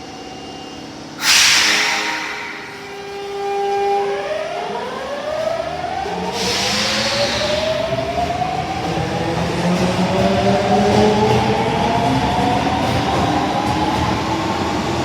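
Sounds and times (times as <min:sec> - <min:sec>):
traction motors whining: 0:00.0 - 0:15.0
train running gear rumble: 0:00.0 - 0:15.0
hiss: 0:01.2 - 0:03.7, 0:06.2 - 0:08.2
steady tone: 0:01.2 - 0:09.3.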